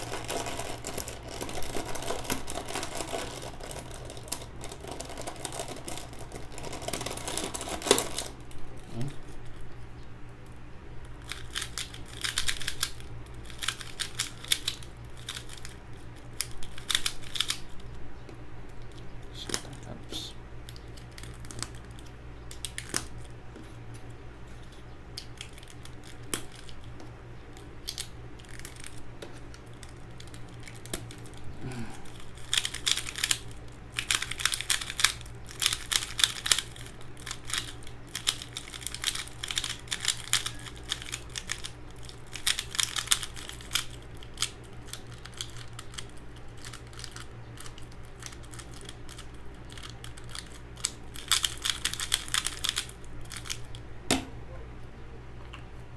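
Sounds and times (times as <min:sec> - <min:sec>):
plastic puzzle cube clicking: 0:11.3 - 0:17.7, 0:32.4 - 0:33.4, 0:34.0 - 0:53.6.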